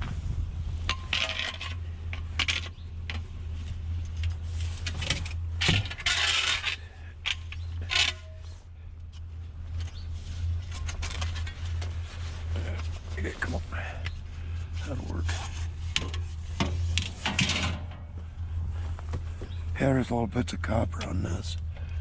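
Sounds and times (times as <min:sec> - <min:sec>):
steady low hum: 0:00.0 - 0:22.0
scrap metal clanking and scraping: 0:00.8 - 0:03.3, 0:03.9 - 0:18.2.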